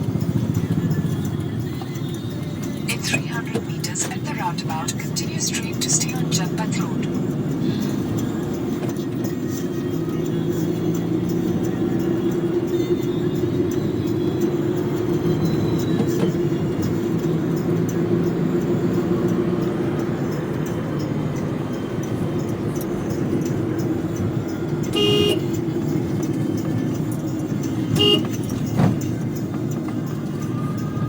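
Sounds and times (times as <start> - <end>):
engine and road noise: 0.0 - 31.0
car horn toots: 24.8 - 25.6, 27.9 - 28.6.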